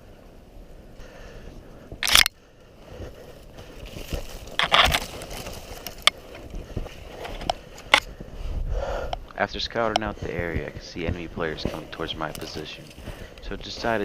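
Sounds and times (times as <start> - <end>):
footsteps crunching through snow: 1.8 - 8.6, 9.4 - 14.0
sharp clicks: 2.0 - 2.4.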